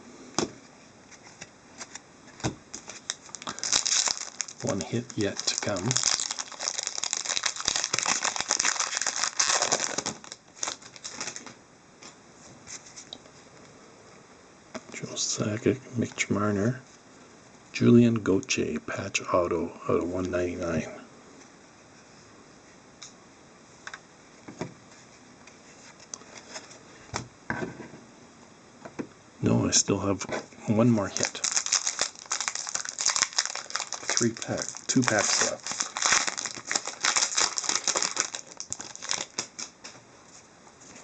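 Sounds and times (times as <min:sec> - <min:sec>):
cards rustling: 0:01.2 - 0:11.5, 0:31.0 - 0:39.7
wrapper crinkling: 0:02.7 - 0:11.6, 0:31.0 - 0:39.8.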